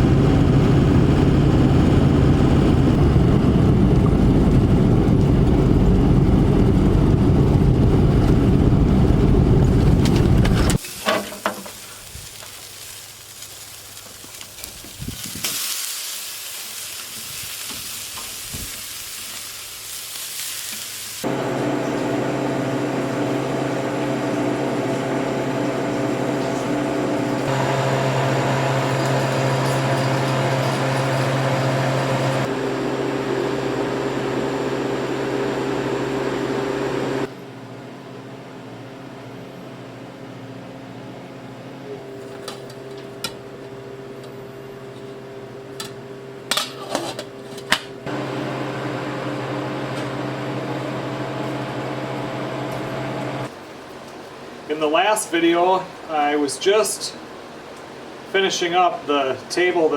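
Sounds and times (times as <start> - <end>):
motor hum: 21.2 - 37.7, 48.0 - 53.5.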